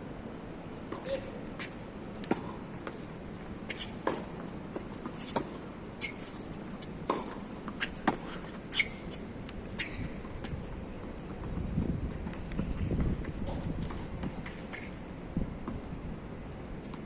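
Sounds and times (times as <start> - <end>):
shoe squeaks: 3.7 - 4.0, 4.7 - 6.9, 7.5 - 10.7.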